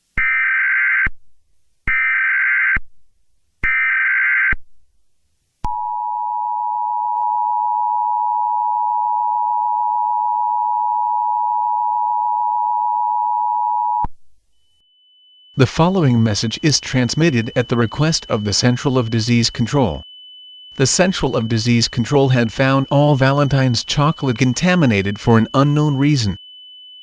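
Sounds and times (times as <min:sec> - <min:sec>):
digital data bursts: 0:15.6 - 0:20.0, 0:20.8 - 0:26.4
two-tone attention signal: 0:15.6 - 0:20.0, 0:20.7 - 0:26.4.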